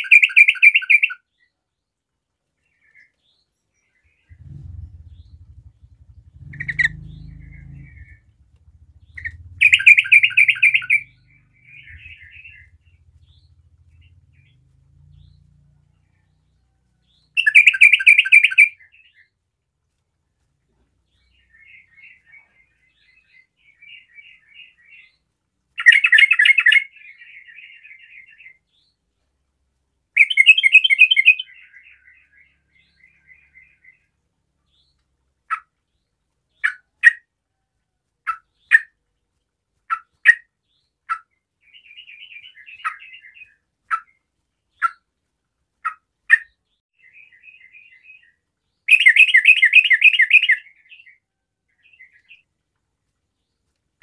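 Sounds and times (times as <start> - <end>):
bird chattering: 4.3 - 14.6, 17.4 - 18.8
bird singing bubbling bursts: 9.0 - 12.8.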